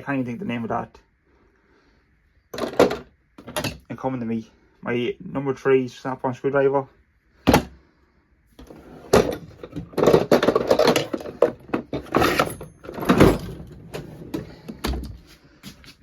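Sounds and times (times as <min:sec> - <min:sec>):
hand tools rattling in drawer: 0:08.6 - 0:15.2.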